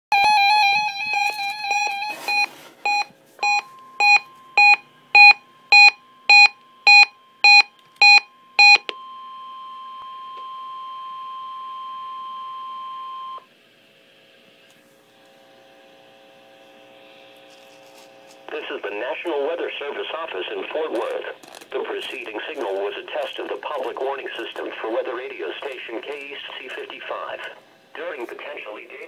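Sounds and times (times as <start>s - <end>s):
weather radio alarm tone: 0.1s - 2.5s
electronic alarm beeping: 0.1s - 13.4s
faint hum: 0.1s - 29.0s.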